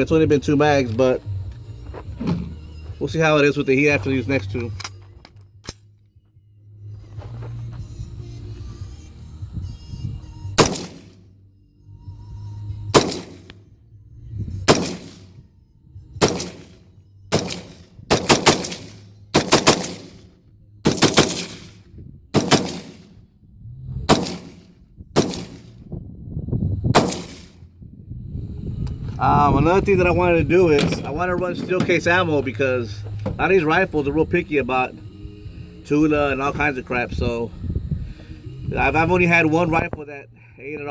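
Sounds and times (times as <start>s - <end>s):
rifle shots: 10.6s - 11.2s, 12.9s - 13.6s, 14.7s - 15.4s, 16.2s - 23.2s, 24.1s - 25.8s, 26.9s - 27.6s.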